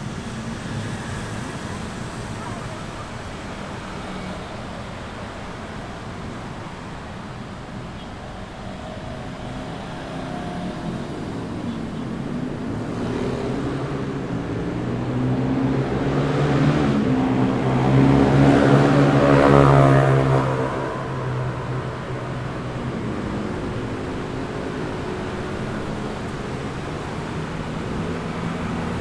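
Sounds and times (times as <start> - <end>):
city street traffic: 0.0 - 29.0
vehicle engine passing close: 12.6 - 29.0.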